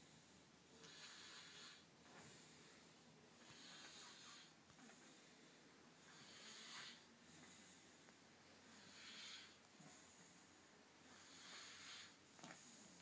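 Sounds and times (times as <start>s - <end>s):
man snoring: 0.8s - 1.9s, 3.4s - 4.5s, 6.1s - 7.1s, 8.6s - 9.6s, 11.1s - 12.2s.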